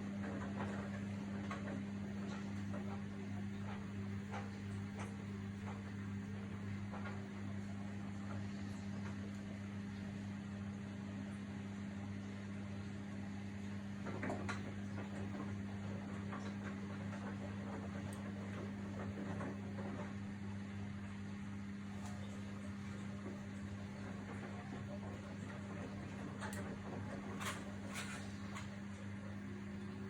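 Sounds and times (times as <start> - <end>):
washing machine humming: 0.0 - 30.0
washing machine clicks and knocks: 22.0 - 28.8.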